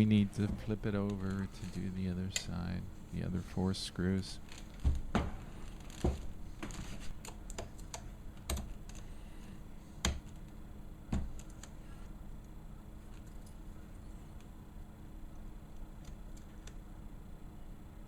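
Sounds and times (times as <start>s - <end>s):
laptop display clicks and knocks: 10.0s - 10.5s, 11.1s - 11.8s.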